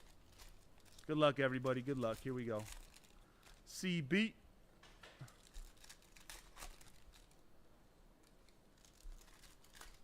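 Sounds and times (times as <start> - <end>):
card pack wrapper tearing: 0.0 - 3.8, 5.3 - 7.4, 8.2 - 10.0.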